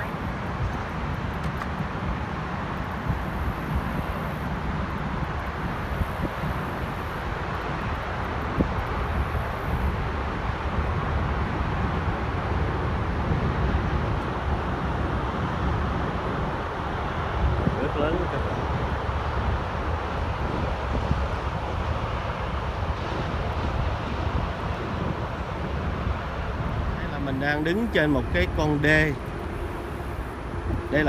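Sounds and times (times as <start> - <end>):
low unsteady rumble: 0.0 - 31.0.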